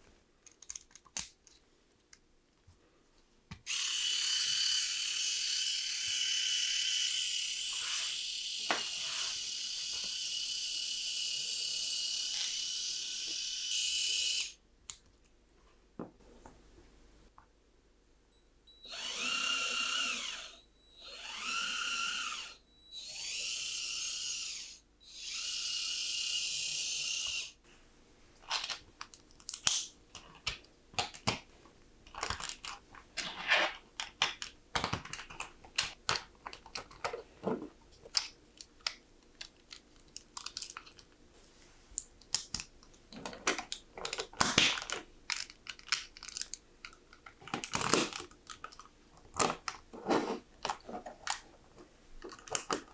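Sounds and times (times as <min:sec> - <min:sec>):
plastic parts clicking and rattling: 0:00.4 - 0:01.7, 0:28.4 - 0:41.3, 0:41.9 - 0:52.9
small electric motor whining: 0:03.7 - 0:14.6, 0:18.9 - 0:27.6.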